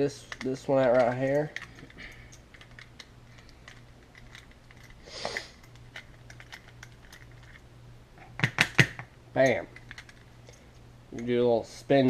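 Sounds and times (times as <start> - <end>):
short hiss: 5.0 - 5.6.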